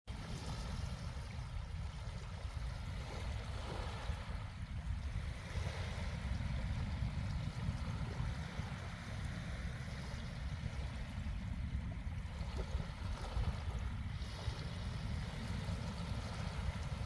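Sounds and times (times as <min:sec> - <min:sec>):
small waves washing onto beach: 0:00.1 - 0:17.0.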